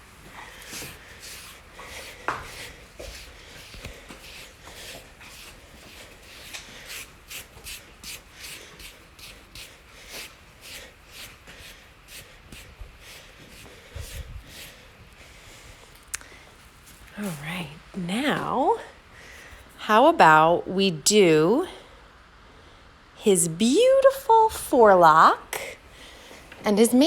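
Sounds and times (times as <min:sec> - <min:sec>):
brush rubbing over coat: 0:00.0 - 0:15.2.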